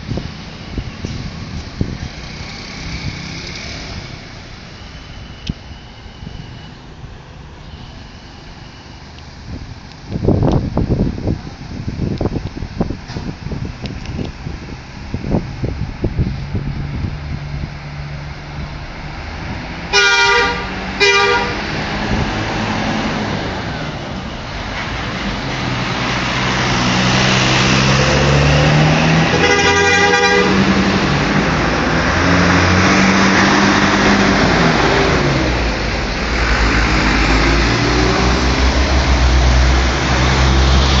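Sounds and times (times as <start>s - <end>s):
diesel bus engine pulling away: 0.0s - 41.0s
bus horn blasts: 19.9s - 21.7s, 29.3s - 30.9s.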